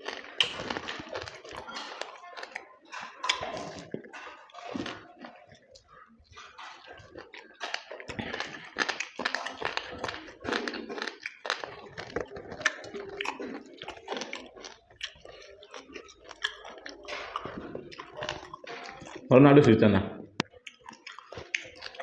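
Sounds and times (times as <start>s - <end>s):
person chewing food: 0.0s - 19.3s, 20.2s - 22.0s
wet mouth clicks and smacks: 0.0s - 19.3s, 20.3s - 22.0s.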